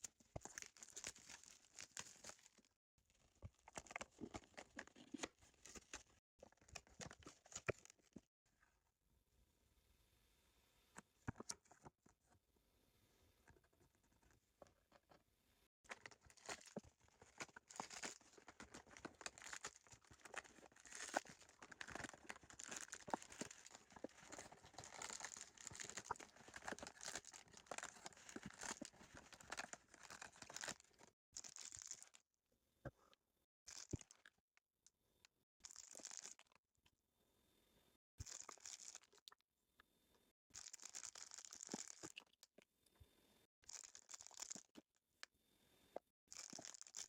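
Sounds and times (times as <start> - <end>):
packaging tearing and crinkling: 15.9 - 32.1, 46.4 - 47.0.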